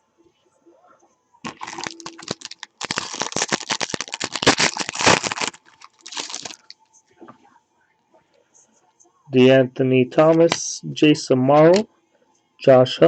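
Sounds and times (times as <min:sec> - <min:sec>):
wrapper being torn and crinkled: 0:01.5 - 0:06.8.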